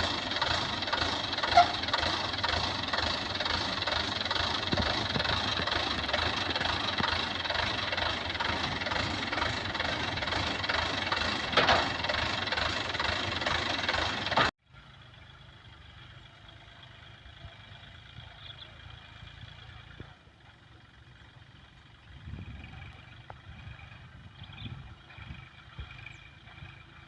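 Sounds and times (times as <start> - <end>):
loud vehicle engine running: 0.0 - 27.0
quiet engine hum: 0.0 - 27.0.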